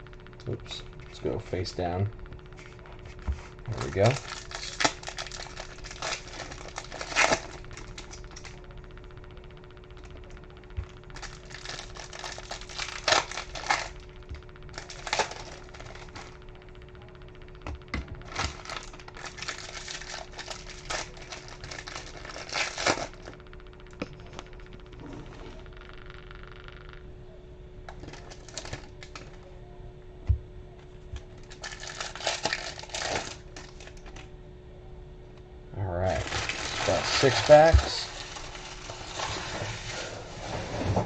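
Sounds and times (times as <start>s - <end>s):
faint steady hum: 0.0s - 41.0s
foil wrappers crinkling and tearing: 3.7s - 8.6s, 11.1s - 14.1s, 14.7s - 16.4s, 18.2s - 23.4s, 28.0s - 29.3s, 31.4s - 34.3s, 36.0s - 40.6s.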